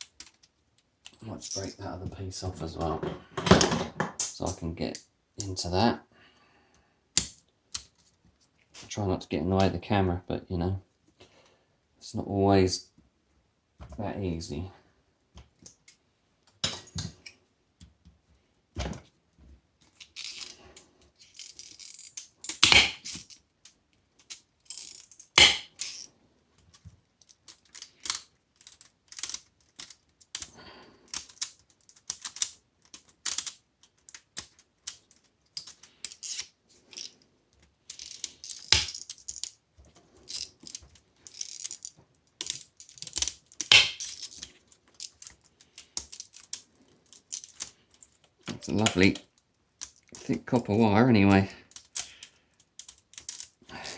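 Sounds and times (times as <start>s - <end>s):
cutters snipping copper wire: 22.5s - 23.2s, 25.4s - 25.8s.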